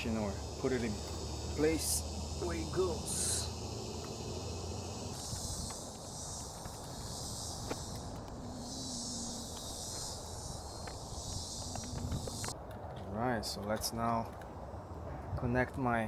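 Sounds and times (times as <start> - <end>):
insects chorus: 0.0 - 12.6.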